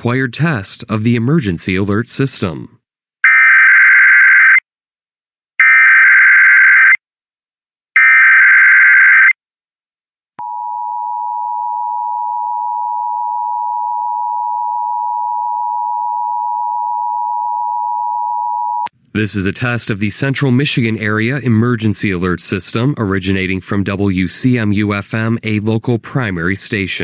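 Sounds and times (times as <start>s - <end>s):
two-tone attention signal: 10.4s - 18.9s.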